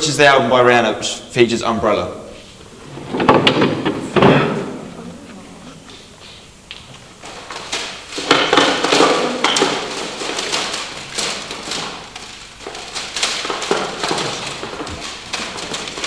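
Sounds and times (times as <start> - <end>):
plastic cd cases clattering: 6.9 - 16.0.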